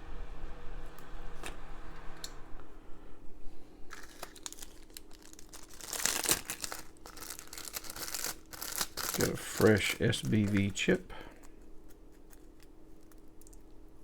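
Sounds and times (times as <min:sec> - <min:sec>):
faint steady hum: 0:00.0 - 0:14.0
plastic packaging crinkling: 0:03.9 - 0:13.8.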